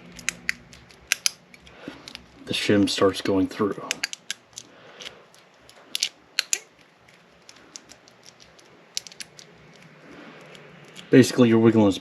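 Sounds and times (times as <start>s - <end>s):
metallic clicks of lock picking: 3.9s - 6.7s, 7.5s - 11.1s.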